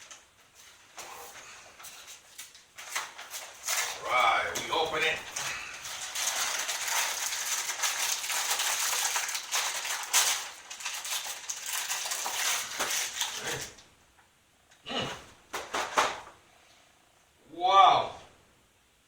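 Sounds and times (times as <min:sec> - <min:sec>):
plastic liner crinkling: 0:00.0 - 0:13.8.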